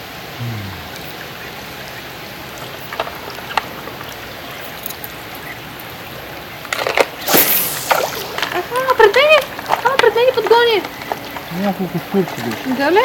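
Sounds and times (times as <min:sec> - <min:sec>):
river water rushing: 0:00.1 - 0:08.8
water splashing: 0:00.8 - 0:13.0.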